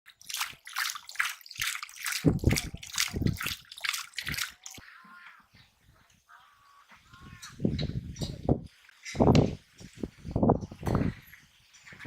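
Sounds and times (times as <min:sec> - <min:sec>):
water splashing and sloshing: 0:00.1 - 0:04.8.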